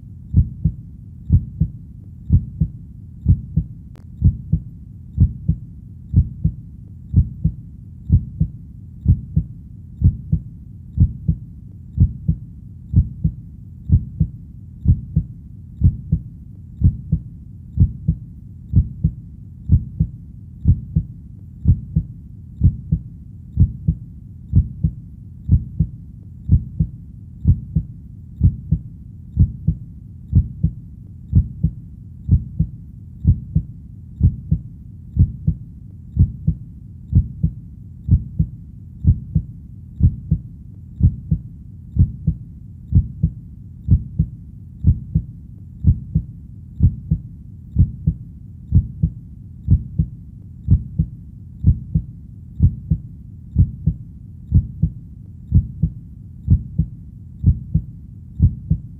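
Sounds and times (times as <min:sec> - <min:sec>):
heartbeat double thump: 0:00.3 - 0:01.7, 0:02.3 - 0:10.4, 0:11.0 - 0:11.4, 0:12.0 - 0:16.2, 0:16.8 - 0:17.2, 0:17.8 - 0:23.0, 0:23.6 - 0:25.9, 0:26.5 - 0:28.8, 0:29.4 - 0:31.7, 0:32.3 - 0:34.6, 0:35.2 - 0:35.6, 0:36.2 - 0:40.4, 0:41.0 - 0:41.4, 0:42.0 - 0:47.2, 0:47.8 - 0:50.1, 0:50.7 - 0:53.0, 0:53.6 - 0:58.9.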